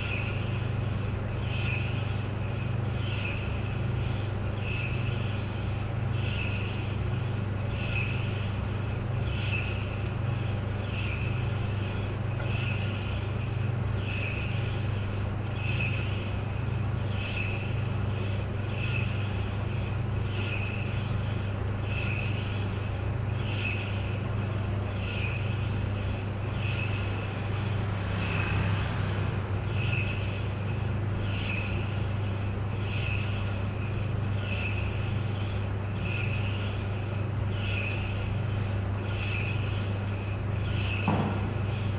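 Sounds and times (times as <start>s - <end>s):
clothes dryer humming: 0.0s - 32.8s.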